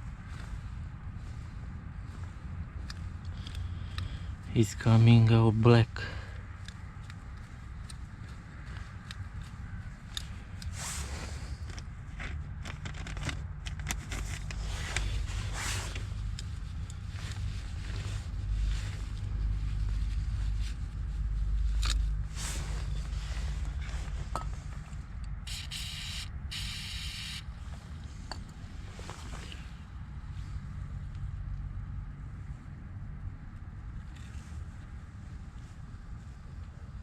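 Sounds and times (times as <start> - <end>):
steady low rumble: 0.0 - 37.0
hands scraping and rubbing metal: 6.7 - 25.9
short hissing bursts: 25.5 - 27.5.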